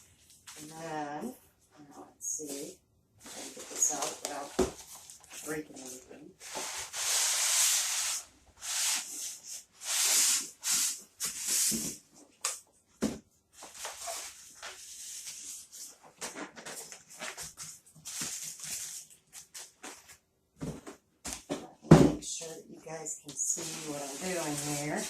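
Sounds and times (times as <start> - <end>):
packaging rustling and scraping: 3.2 - 12.1, 13.6 - 21.0, 23.6 - 25.0.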